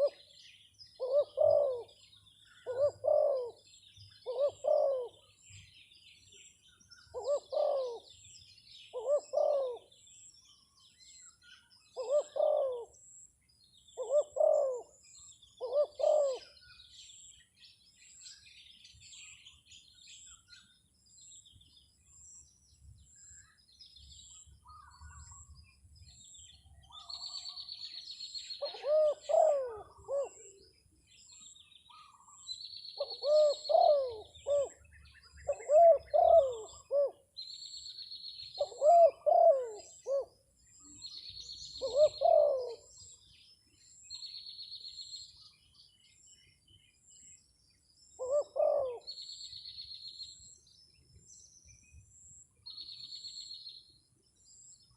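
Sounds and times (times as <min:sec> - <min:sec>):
dove cooing: 0:00.0 - 0:00.4, 0:01.0 - 0:05.4, 0:07.1 - 0:10.0, 0:11.9 - 0:13.1, 0:14.0 - 0:16.6, 0:28.6 - 0:30.6, 0:31.9 - 0:37.2, 0:38.6 - 0:40.4, 0:41.7 - 0:43.2, 0:48.2 - 0:49.2
small birds chirping: 0:00.0 - 0:54.9.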